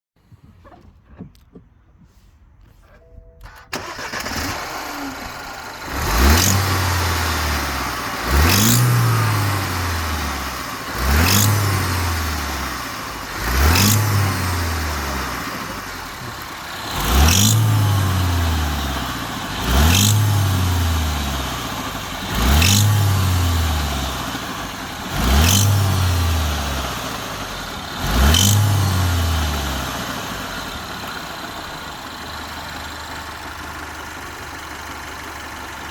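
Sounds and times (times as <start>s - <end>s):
car engine revving: 2.8s - 32.4s.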